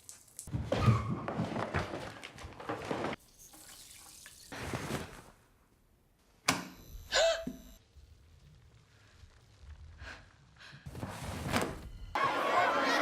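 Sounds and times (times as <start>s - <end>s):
tap water running: 3.2s - 4.6s.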